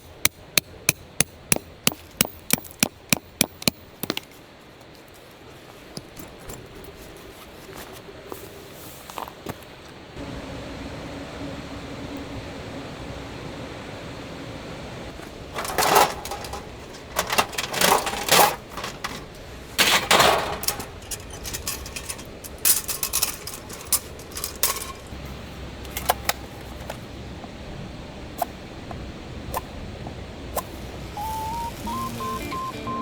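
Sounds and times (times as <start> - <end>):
objects clattering and knocking: 15.5 - 25.2.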